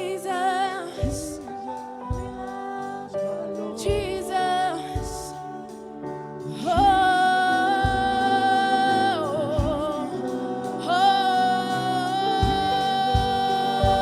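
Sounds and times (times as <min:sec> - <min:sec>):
live gospel band: 0:00.0 - 0:14.0
singer holding long notes: 0:00.0 - 0:14.0.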